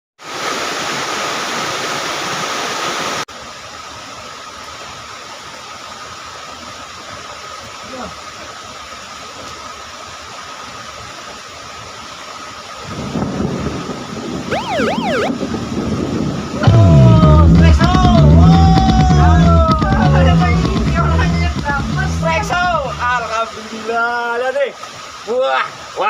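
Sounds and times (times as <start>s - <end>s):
thin high tone: 14.5s - 15.3s.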